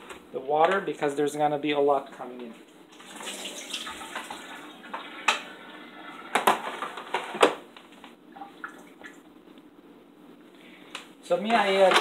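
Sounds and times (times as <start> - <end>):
water pouring from tank: 2.9 - 6.2.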